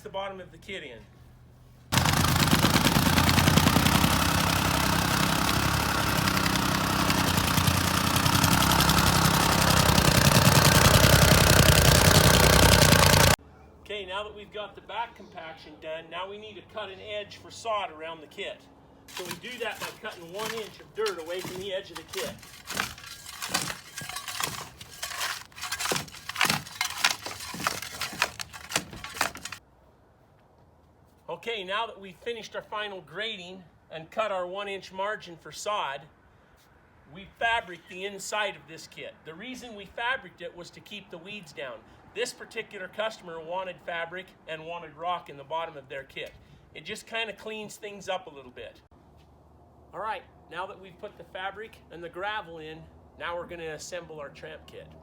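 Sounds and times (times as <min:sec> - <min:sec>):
soil compactor pounding: 0:01.9 - 0:13.4, 0:19.1 - 0:29.6
hand tool chopping into dirt: 0:05.3 - 0:13.4, 0:19.1 - 0:29.6.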